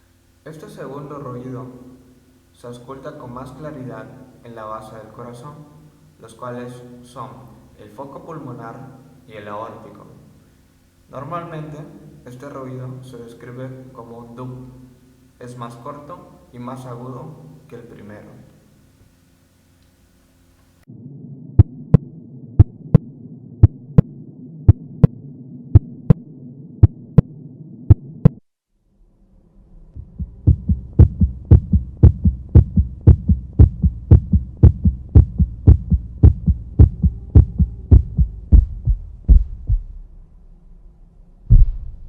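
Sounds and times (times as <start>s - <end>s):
steady hum: 0.0s - 42.0s
heartbeat lub-dub: 21.5s - 28.4s, 30.0s - 40.3s, 41.5s - 42.0s.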